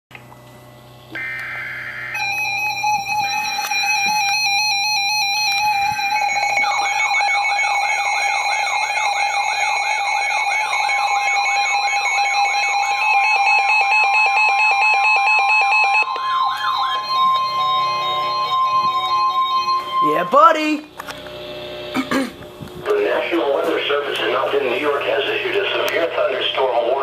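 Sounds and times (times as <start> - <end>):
steady multi-tone alarm: 1.0 - 22.1, 23.0 - 27.0
siren-like warble: 1.1 - 21.9.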